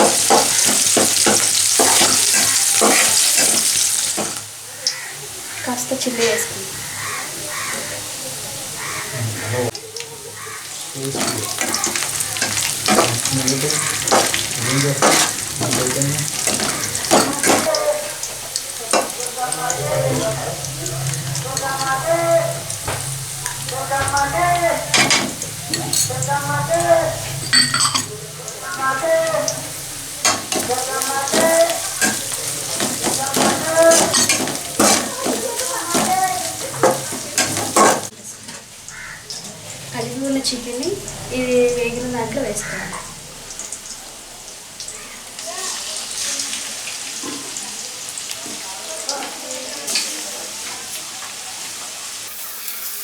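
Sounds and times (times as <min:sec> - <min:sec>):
metal spoon scraping pan: 0:00.0 - 0:04.4, 0:11.1 - 0:17.8, 0:18.8 - 0:28.2, 0:28.8 - 0:38.1
onions sizzling in hot oil: 0:00.0 - 0:53.0.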